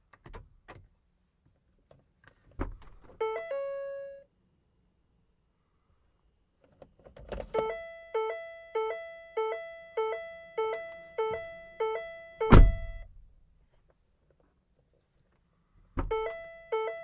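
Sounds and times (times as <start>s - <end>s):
car door warning chime: 3.2s - 4.2s, 7.6s - 13.1s, 16.1s - 17.0s.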